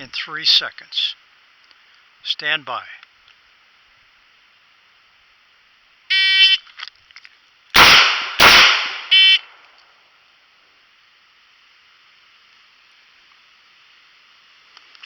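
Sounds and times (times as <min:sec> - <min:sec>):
shot timer beeps: 0:09.1 - 0:09.4.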